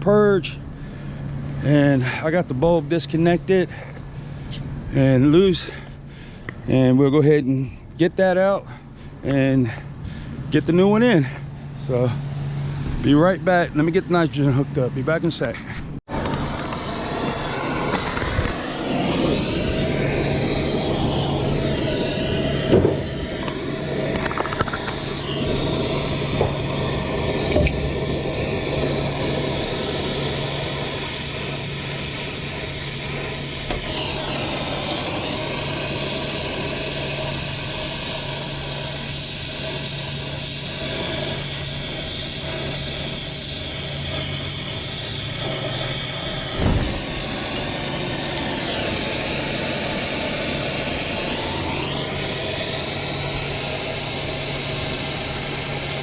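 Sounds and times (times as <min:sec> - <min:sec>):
machine humming and hissing: 0:16.1 - 0:56.0
knocks: 0:46.6 - 0:47.0.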